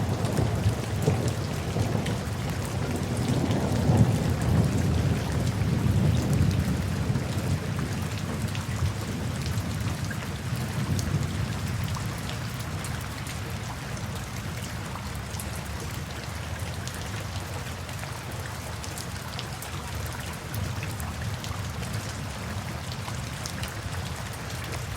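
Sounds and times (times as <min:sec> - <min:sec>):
low rumble of thunder: 0:00.0 - 0:16.0
steady rain falling: 0:00.0 - 0:24.9.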